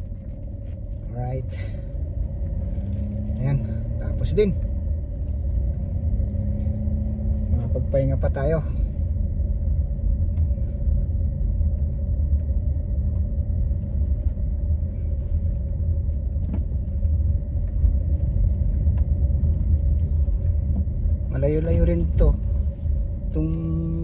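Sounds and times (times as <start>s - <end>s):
car driving rumble: 0.0s - 24.0s
faint constant hum: 0.0s - 24.0s.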